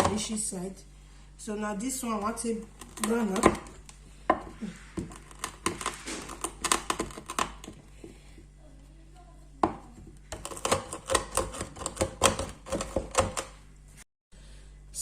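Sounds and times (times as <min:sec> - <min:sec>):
knocking and crunching of crushing: 0:02.7 - 0:08.6, 0:09.6 - 0:13.6.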